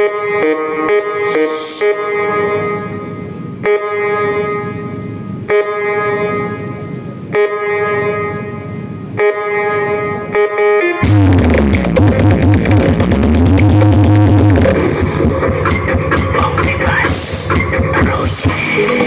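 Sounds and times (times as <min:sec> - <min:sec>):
long horn-like tones: 0:00.0 - 0:11.4
deep bass drop with falling sweep: 0:11.0 - 0:19.0.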